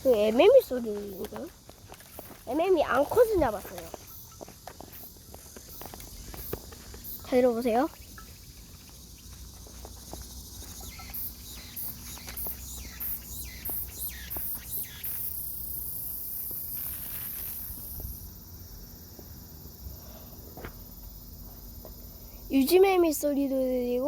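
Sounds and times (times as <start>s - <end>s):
cicada high repeated phrases: 0.0s - 24.0s
large cicadas buzzing: 0.0s - 24.0s.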